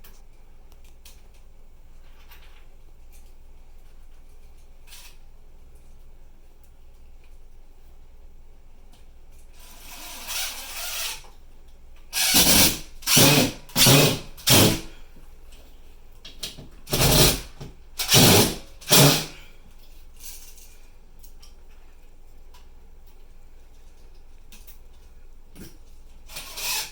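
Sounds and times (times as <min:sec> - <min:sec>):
tool loud bursts: 0:12.2 - 0:14.9, 0:16.9 - 0:19.4.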